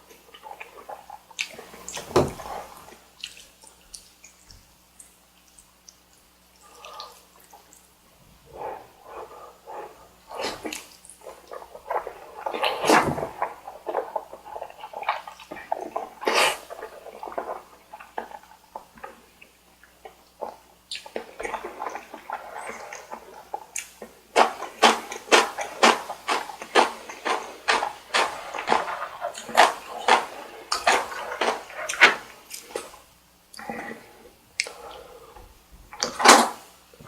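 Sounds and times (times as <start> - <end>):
wet chewing and smacking: 2.9 - 7.9, 10.6 - 33.6
noodle slurping: 6.6 - 35.4.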